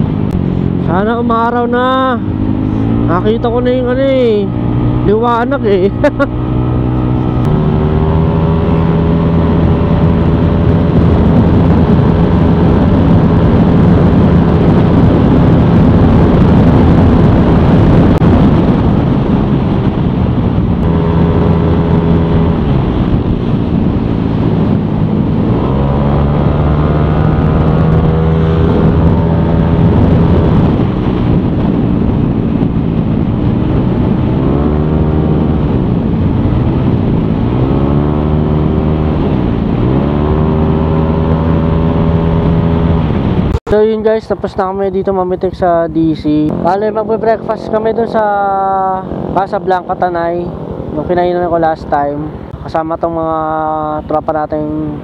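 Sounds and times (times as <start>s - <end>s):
scooter engine revving: 20.8s - 43.6s, 46.3s - 52.6s.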